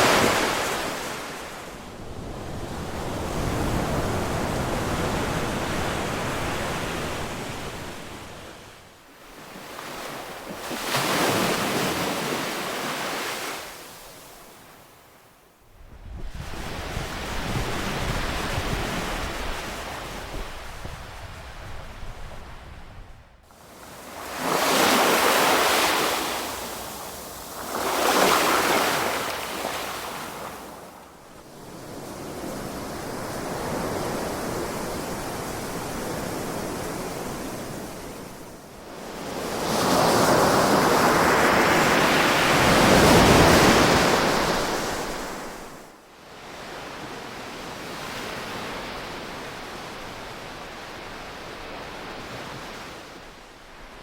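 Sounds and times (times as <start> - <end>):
ocean waves breaking: 0.0 - 8.6, 9.2 - 14.4, 23.5 - 30.7.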